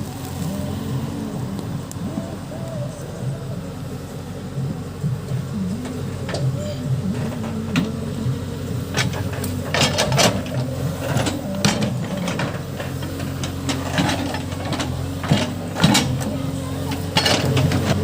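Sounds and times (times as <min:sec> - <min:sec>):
diesel engine under load: 0:00.0 - 0:18.0
machine knocks and clanks: 0:08.9 - 0:16.3, 0:16.9 - 0:18.0.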